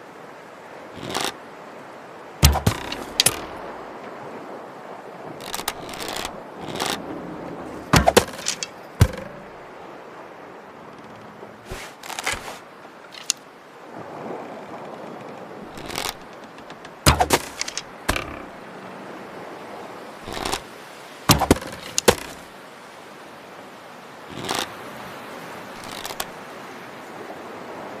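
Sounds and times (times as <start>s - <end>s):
sharp snaps and knocks: 1.0s - 1.4s, 2.4s - 3.8s, 5.4s - 7.0s, 7.8s - 9.6s, 11.0s - 12.6s, 13.2s - 13.4s, 15.7s - 18.5s, 20.3s - 20.7s, 21.3s - 22.5s, 24.3s - 24.7s, 25.8s - 26.3s.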